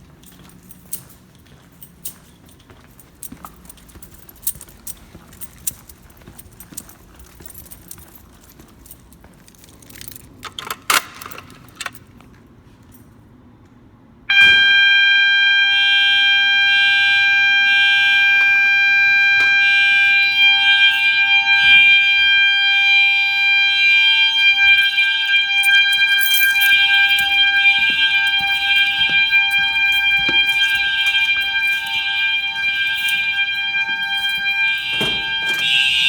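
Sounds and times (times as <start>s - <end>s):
handling clicks: 0.2s - 12.4s
pulsing alarm tone: 14.3s - 36.0s
steady electronic alarm tone: 14.3s - 36.0s.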